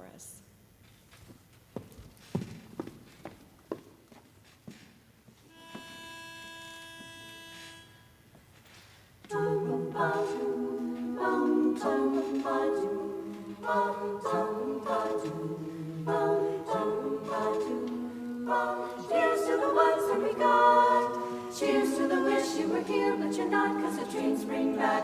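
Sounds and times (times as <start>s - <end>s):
pitch pipe note: 5.5s - 8.1s
women's chorus singing a cappella: 9.3s - 25.0s.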